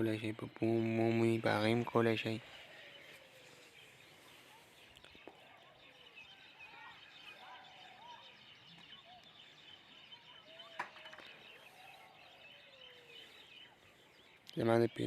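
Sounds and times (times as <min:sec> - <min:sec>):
faint bird chirps: 0:00.0 - 0:15.0.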